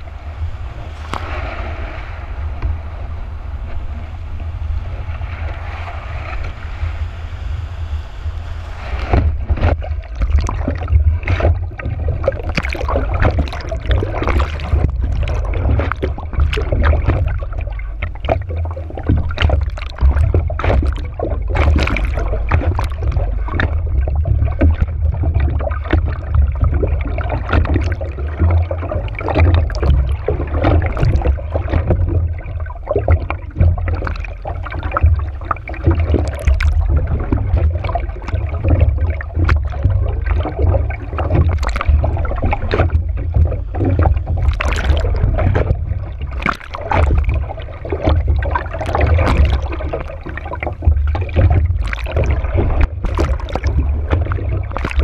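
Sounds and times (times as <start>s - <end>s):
low wind rumble: 0.0s - 55.0s
water rushing and splashing: 0.0s - 55.0s
sharp water slaps: 1.1s - 1.4s, 12.2s - 17.4s, 19.0s - 23.6s, 41.3s - 55.0s.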